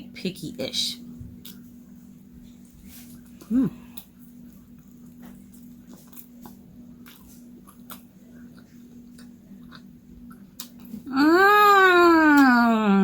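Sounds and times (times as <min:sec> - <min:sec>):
faint steady hum: 0:00.0 - 0:13.0
person chewing food: 0:02.4 - 0:11.1.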